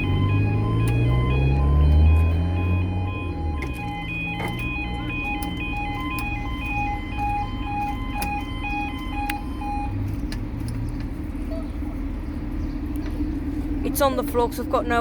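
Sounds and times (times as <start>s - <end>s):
level crossing alarms: 0.0s - 10.0s.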